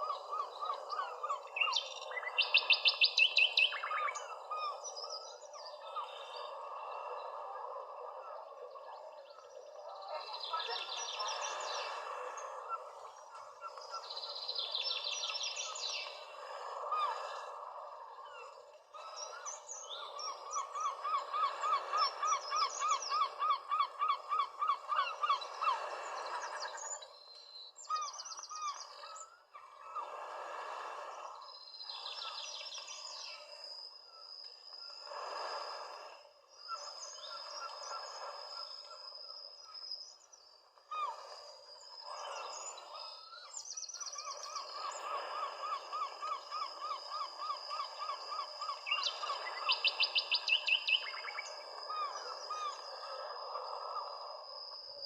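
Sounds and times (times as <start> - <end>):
birds chirping: 0.0 - 7.4.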